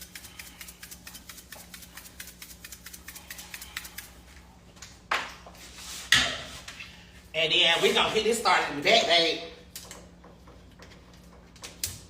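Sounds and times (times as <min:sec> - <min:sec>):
pepper shaker rattling: 0:00.0 - 0:04.3.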